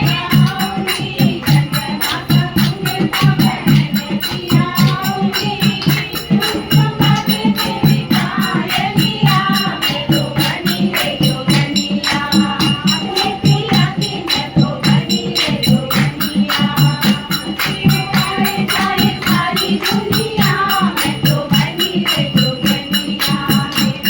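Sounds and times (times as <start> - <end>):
folk song singing: 0.0 - 24.0
jingling percussion: 0.0 - 24.0.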